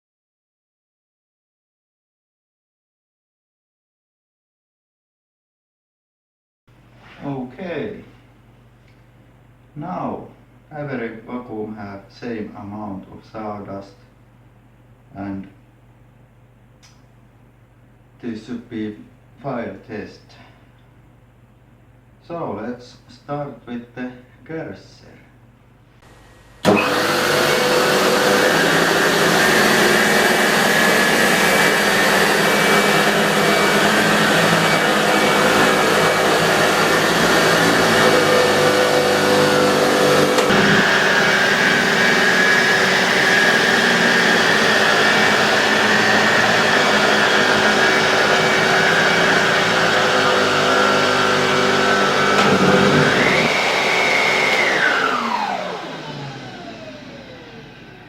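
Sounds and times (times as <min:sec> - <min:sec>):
vacuum cleaner running: 0:26.1 - 0:58.0.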